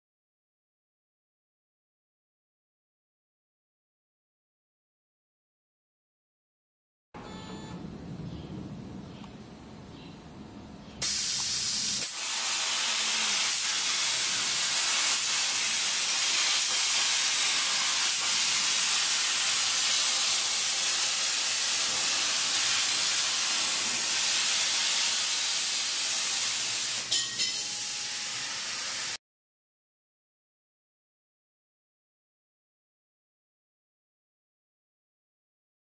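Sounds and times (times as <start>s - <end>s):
cutting torch hissing: 11.0s - 29.2s.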